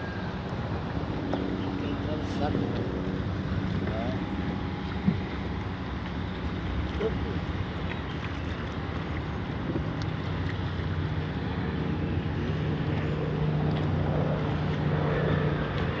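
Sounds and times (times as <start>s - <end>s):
boat motor humming: 0.0s - 16.0s.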